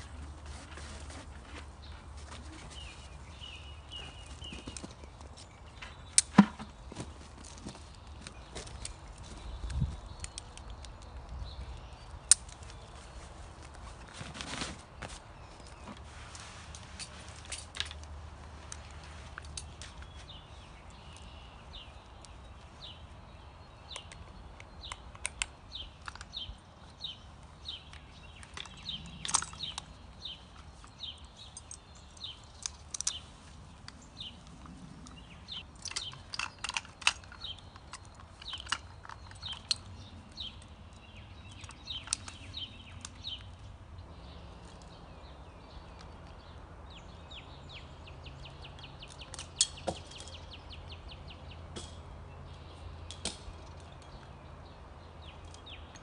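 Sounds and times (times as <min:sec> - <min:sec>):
sharp clicks: 0:23.9 - 0:33.2.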